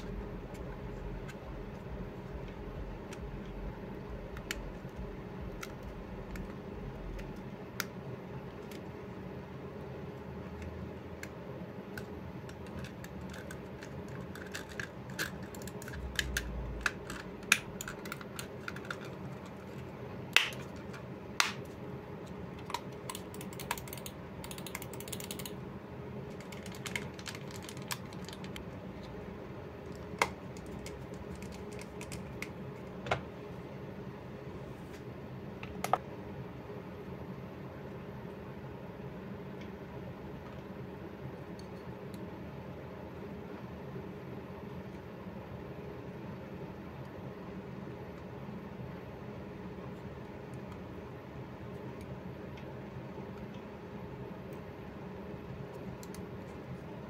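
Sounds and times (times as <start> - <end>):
computer mouse clicks: 22.7 - 25.6, 55.7 - 56.2
plastic crackles: 26.3 - 29.1.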